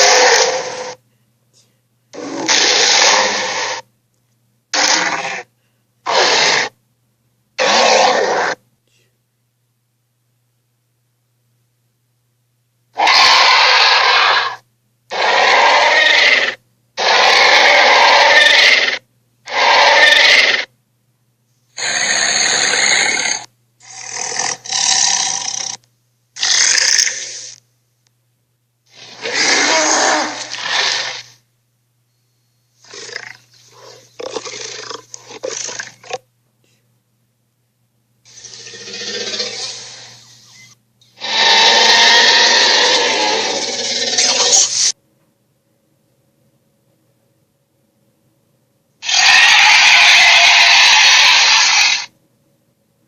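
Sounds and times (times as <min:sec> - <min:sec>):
creature roaring: 0:00.0 - 0:01.0, 0:02.2 - 0:03.8, 0:04.7 - 0:05.5, 0:06.1 - 0:06.7, 0:07.6 - 0:08.6, 0:13.0 - 0:20.7, 0:21.8 - 0:25.8, 0:26.4 - 0:27.6, 0:28.9 - 0:31.4, 0:38.3 - 0:40.1, 0:41.2 - 0:44.9, 0:49.0 - 0:52.1.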